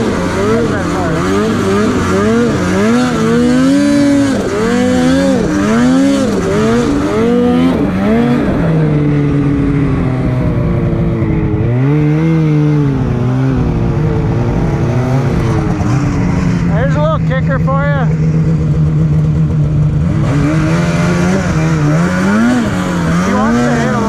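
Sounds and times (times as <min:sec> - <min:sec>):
snowmobile engine revving: 0:00.0 - 0:24.0.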